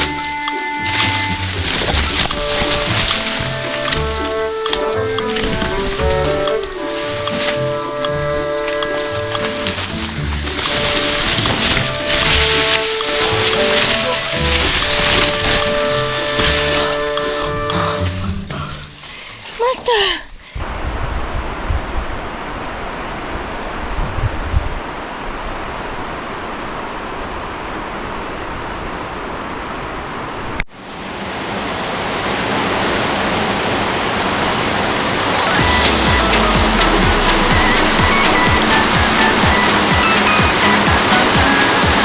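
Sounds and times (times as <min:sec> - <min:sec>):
stream water rushing: 0:00.0 - 0:18.6, 0:30.8 - 0:42.0
background music with bass line: 0:00.0 - 0:19.0, 0:35.3 - 0:42.0
light ticking percussion: 0:00.0 - 0:19.1, 0:35.2 - 0:42.0.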